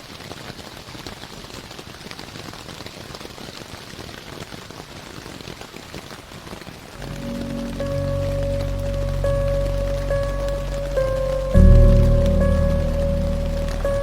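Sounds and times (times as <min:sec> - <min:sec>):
rain hissing and pattering: 0:00.0 - 0:14.0
ambient music with low tones: 0:07.0 - 0:14.0.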